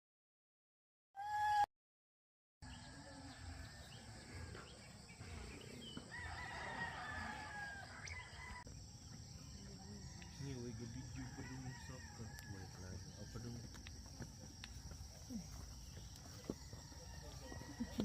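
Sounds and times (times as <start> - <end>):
outdoor background noise: 2.6 - 18.0
rooster crowing: 6.0 - 8.7, 10.1 - 13.2, 16.6 - 18.0.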